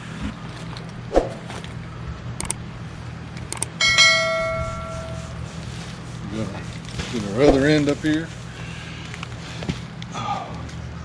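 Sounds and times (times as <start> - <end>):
low steady hum: 0.0 - 6.2
ringing metal clank: 3.8 - 5.3.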